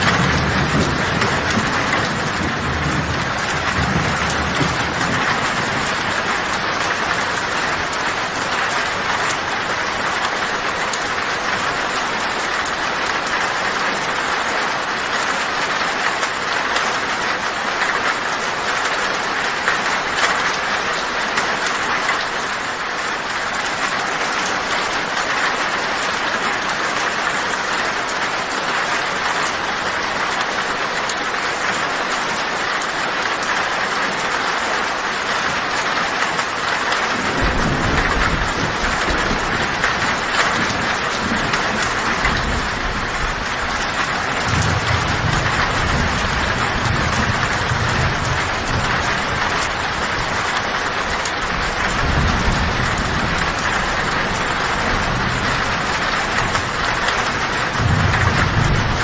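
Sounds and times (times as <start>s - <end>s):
low thunder rumble: 0.0s - 11.9s, 37.1s - 59.0s
heavy rain on a tin roof: 0.0s - 59.0s.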